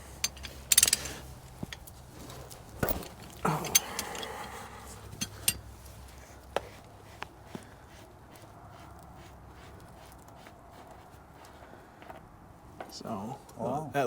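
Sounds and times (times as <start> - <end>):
hand tools clinking on metal: 0.0 - 6.1.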